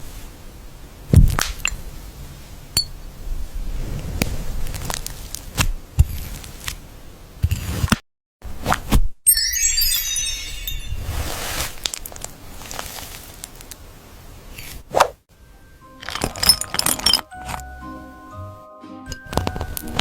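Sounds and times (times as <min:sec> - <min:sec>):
faint background hiss: 0:00.0 - 0:07.4.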